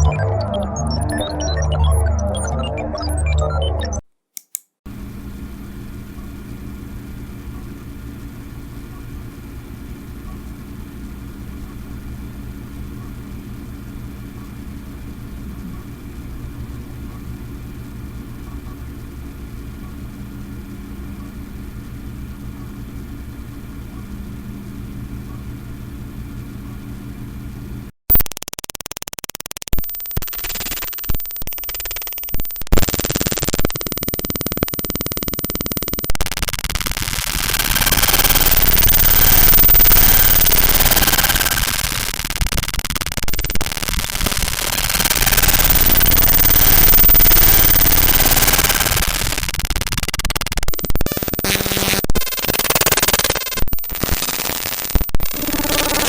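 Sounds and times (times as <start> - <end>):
low electronic hum: 0.0 - 4.0, 29.8 - 56.0
noisy electronic glitch texture: 0.0 - 4.0, 28.1 - 56.0
sharp clicks: 4.4 - 4.7, 28.1 - 56.0
short electronic beeps: 28.1 - 56.0.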